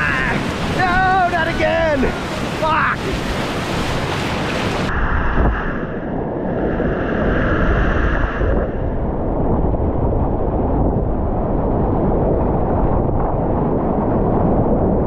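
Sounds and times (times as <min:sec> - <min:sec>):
whitewater rushing and splashing: 0:00.0 - 0:04.9.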